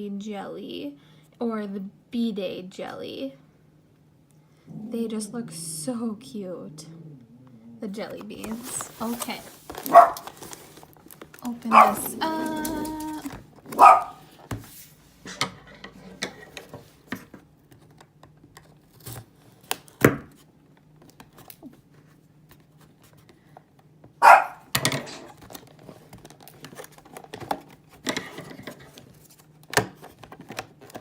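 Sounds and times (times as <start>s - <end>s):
dog barking: 9.9s - 10.3s, 11.7s - 12.2s, 13.7s - 14.3s, 24.2s - 24.7s.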